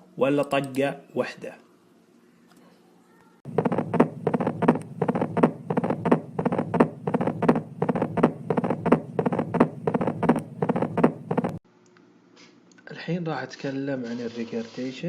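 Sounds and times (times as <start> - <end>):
heartbeat double knocks: 3.5 - 11.6
low steady hum: 3.5 - 12.0.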